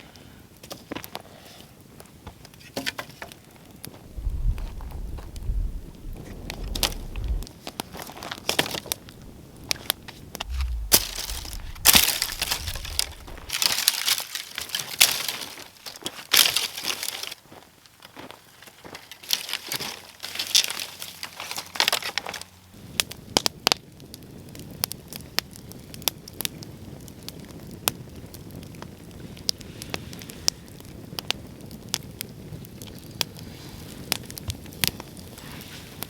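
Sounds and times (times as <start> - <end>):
campfire popping and crackling: 3.8 - 7.6, 8.4 - 9.8, 10.4 - 13.7.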